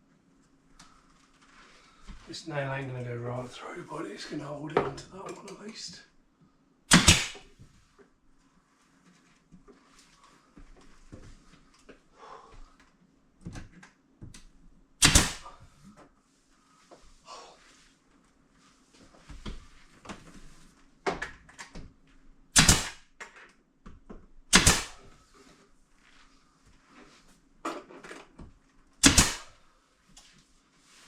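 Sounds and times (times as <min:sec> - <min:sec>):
hammer striking nail into wood: 0:06.9 - 0:07.5, 0:15.0 - 0:15.5, 0:22.6 - 0:23.0, 0:24.5 - 0:25.0, 0:29.0 - 0:29.5.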